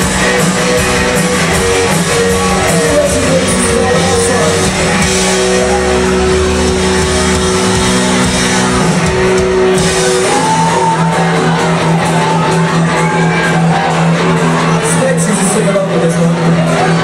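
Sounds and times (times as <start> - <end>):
electric guitar held notes: 0.0 - 11.6
live rock band playing: 0.0 - 17.0.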